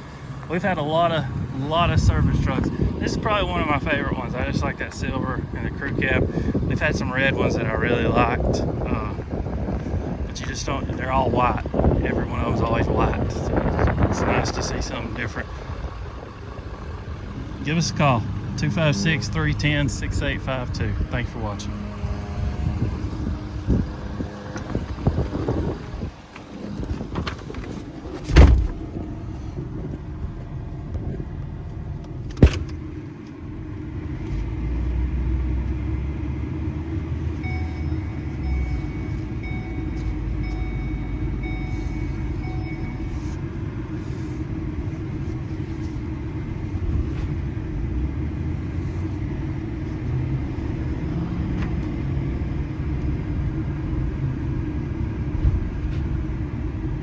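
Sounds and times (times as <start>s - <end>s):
vehicle engine rumbling: 0.0s - 57.0s
sharp thuds: 26.9s - 29.0s, 32.2s - 32.8s.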